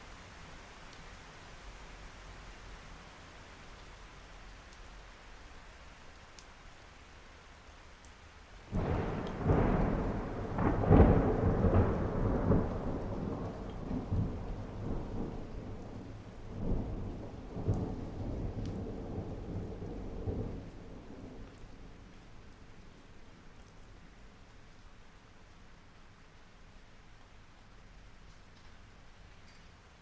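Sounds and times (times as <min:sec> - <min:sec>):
rain falling: 0:00.0 - 0:30.0
thunder clap and rumbling: 0:08.7 - 0:21.6.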